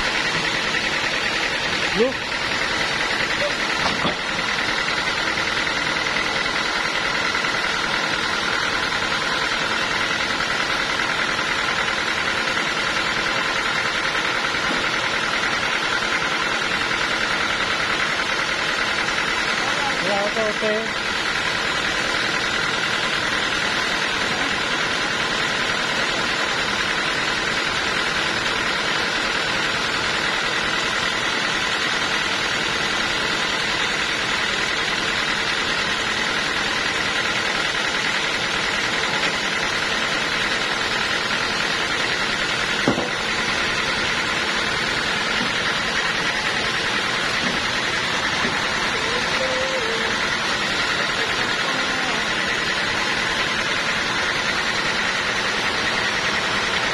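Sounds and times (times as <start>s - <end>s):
sawmill machinery drone: 0.0s - 56.9s
steady machine whine: 0.0s - 56.9s
sharp knock: 42.8s - 43.2s.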